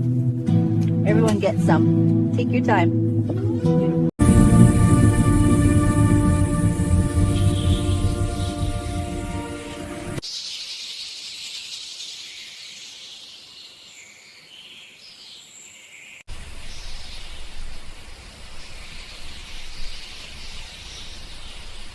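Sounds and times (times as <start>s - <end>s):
rough noise with low rumble: 4.2s - 10.2s
high hiss: 4.2s - 14.6s.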